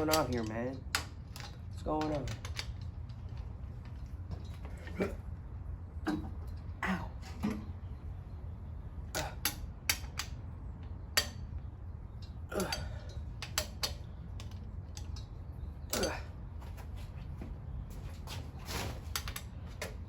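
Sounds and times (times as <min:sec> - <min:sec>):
metallic clicks and clanks of tools: 0:00.0 - 0:05.2, 0:09.1 - 0:16.4.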